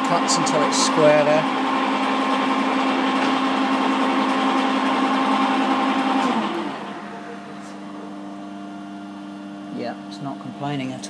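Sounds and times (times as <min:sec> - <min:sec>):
milling machine cutting metal: 0:00.0 - 0:08.4.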